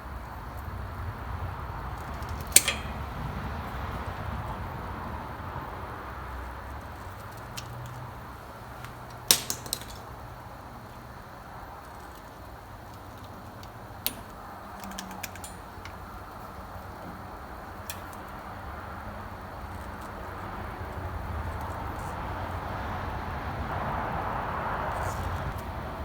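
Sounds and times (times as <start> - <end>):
tools and metal parts clinking: 2.0 - 3.2, 8.8 - 10.1, 13.2 - 16.0.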